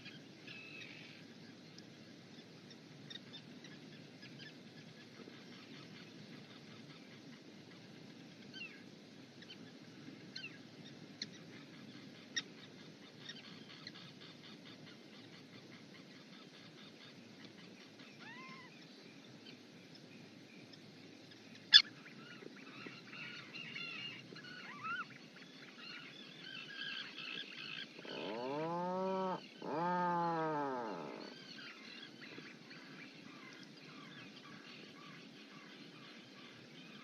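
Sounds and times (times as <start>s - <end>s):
long low bird calls: 0.0s - 20.2s, 21.3s - 37.0s.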